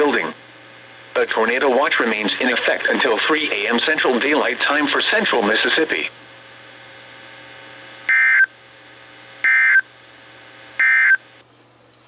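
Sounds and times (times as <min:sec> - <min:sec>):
faint radio hiss: 0:00.0 - 0:08.1
digital data tone bursts: 0:08.1 - 0:08.5, 0:09.4 - 0:09.9, 0:10.8 - 0:11.2.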